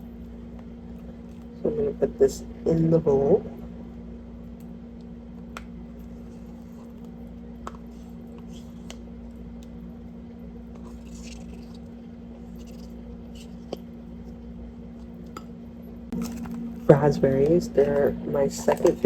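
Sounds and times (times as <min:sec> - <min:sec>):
steady hum: 0:00.0 - 0:19.0
yogurt squishing and scraping: 0:05.6 - 0:19.0.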